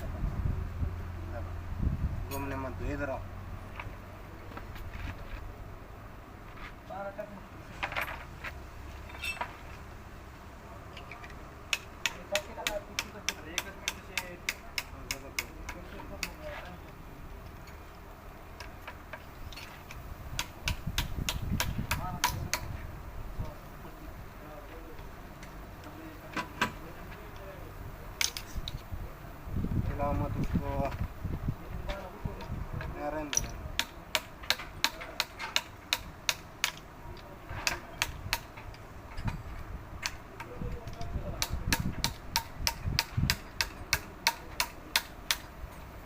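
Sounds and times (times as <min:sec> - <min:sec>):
ringing metal clink: 0:09.1 - 0:09.5
hand tools striking metal: 0:10.9 - 0:16.6, 0:18.6 - 0:22.8, 0:28.2 - 0:28.7, 0:31.9 - 0:45.9.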